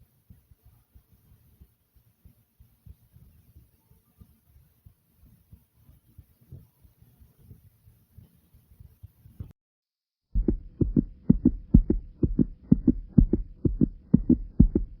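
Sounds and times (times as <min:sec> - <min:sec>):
faint low rustling: 0:10.4 - 0:15.0
heartbeat thumps: 0:10.4 - 0:15.0.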